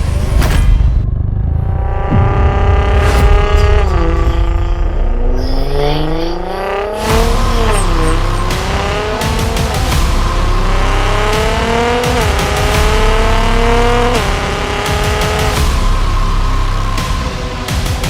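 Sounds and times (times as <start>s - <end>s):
car engine accelerating through gears: 1.2s - 18.0s.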